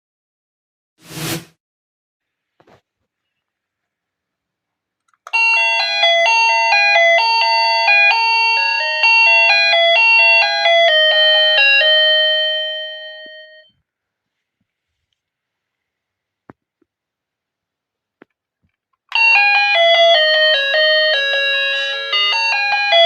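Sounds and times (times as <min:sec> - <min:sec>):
electronic doorbell chime tune: 0:05.3 - 0:13.8, 0:19.1 - 0:23.0.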